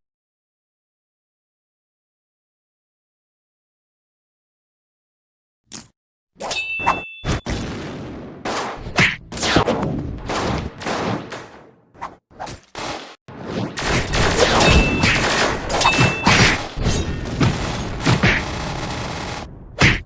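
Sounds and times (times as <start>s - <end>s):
cartoon hits and bangs: 12.9s - 18.6s.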